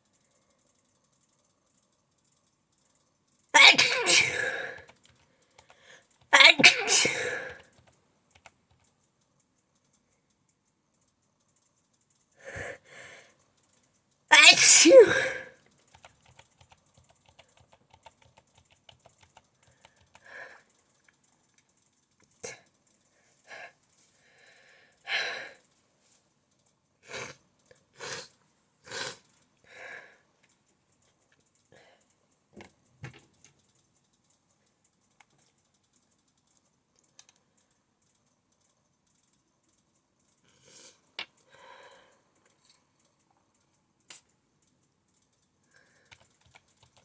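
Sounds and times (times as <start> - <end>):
keyboard key clicks: 15.9 - 20.2.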